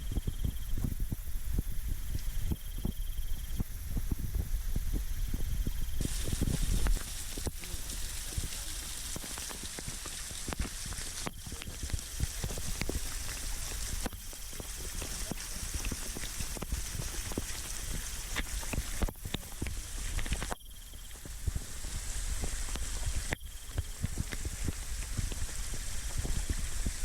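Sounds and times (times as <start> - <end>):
deep rumble: 0.0 - 9.1
waterfall splashing: 6.0 - 20.5.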